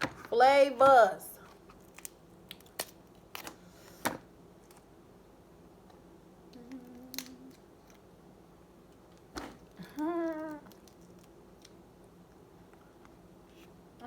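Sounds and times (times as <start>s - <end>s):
crab shell cracking: 1.8s - 3.6s.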